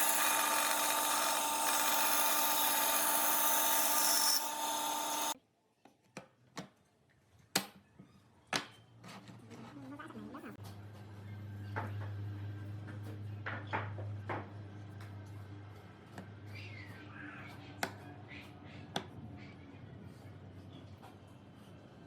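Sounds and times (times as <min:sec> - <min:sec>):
power tool cutting wood: 0:00.0 - 0:05.4.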